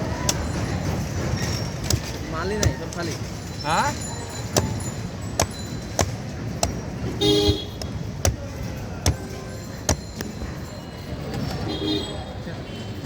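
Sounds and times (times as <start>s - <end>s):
blade chopping coconut: 1.8s - 3.2s, 4.5s - 10.3s
vehicle horn honking: 7.2s - 7.8s.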